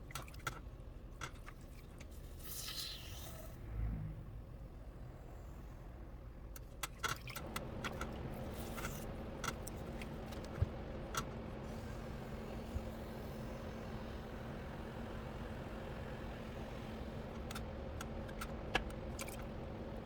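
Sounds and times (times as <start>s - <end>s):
potter's wheel motor humming: 7.5s - 18.8s.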